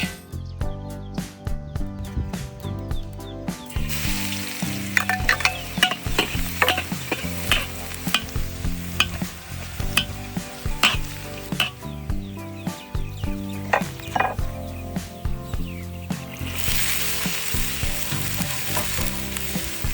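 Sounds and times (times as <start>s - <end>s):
background music: 0.0s - 19.9s
hot oil sizzling: 3.7s - 19.9s
utensil clicking against pan: 3.8s - 12.0s, 13.6s - 14.4s.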